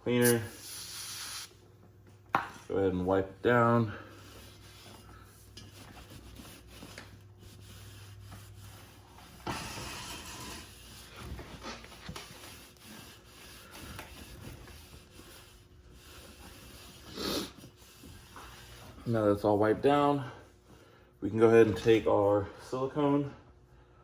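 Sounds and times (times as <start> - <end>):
rag rubbing on metal: 3.5 - 19.7.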